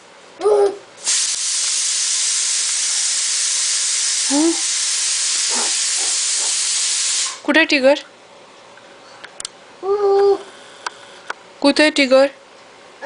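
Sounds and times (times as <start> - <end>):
young child vocalizing: 0.4 - 0.8, 9.8 - 10.5
steady loud hiss: 1.0 - 7.6.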